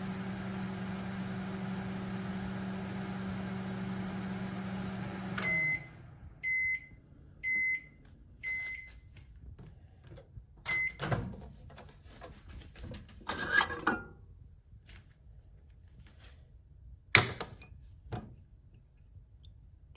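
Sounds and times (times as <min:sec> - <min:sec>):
microwave oven humming: 0:00.0 - 0:08.9.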